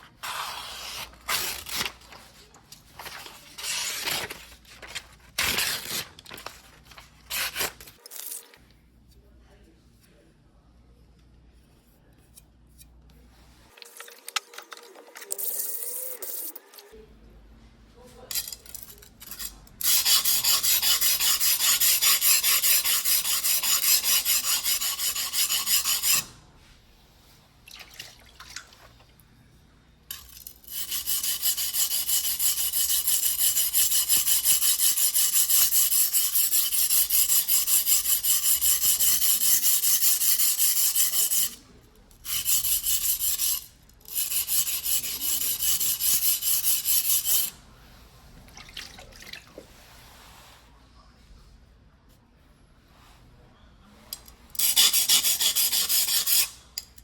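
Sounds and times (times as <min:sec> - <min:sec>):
blade scraping on whetstone: 0:19.3 - 0:26.3, 0:30.7 - 0:41.6, 0:42.3 - 0:47.5, 0:54.6 - 0:56.9.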